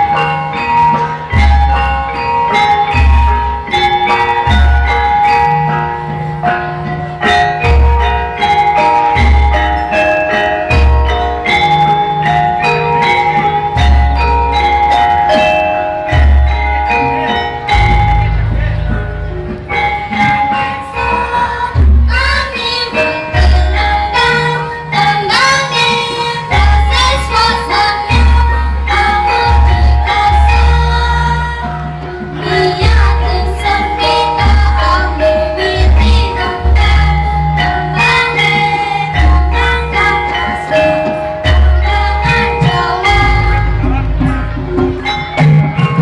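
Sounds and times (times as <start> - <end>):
gamelan ensemble playing: 0.0 - 46.0
metallophones ringing notes: 0.0 - 46.0
person singing: 20.3 - 45.0.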